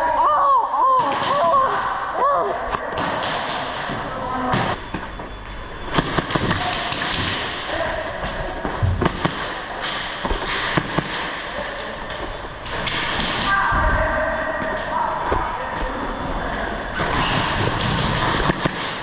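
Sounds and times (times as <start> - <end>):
airsoft guns firing: 5.9 - 7.7, 9.0 - 11.7, 12.6 - 13.6, 17.0 - 19.0.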